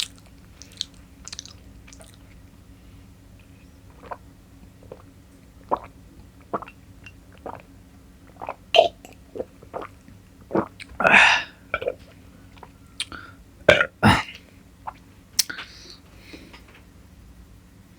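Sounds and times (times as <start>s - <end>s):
wet mouth noises: 0.0s - 2.4s, 3.9s - 4.2s, 4.8s - 7.7s, 12.6s - 13.2s, 14.0s - 15.8s
wet chewing sounds: 0.0s - 2.5s, 3.4s - 4.2s.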